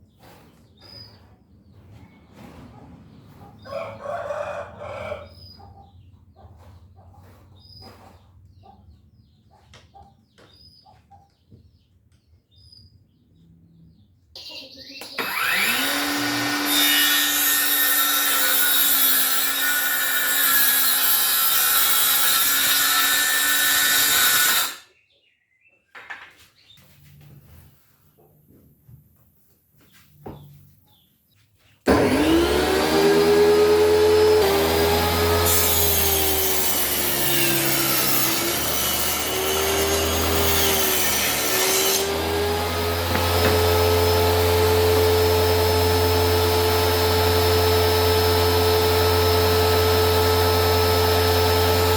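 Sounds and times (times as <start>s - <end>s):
circular saw motor whining: 15.2s - 17.8s.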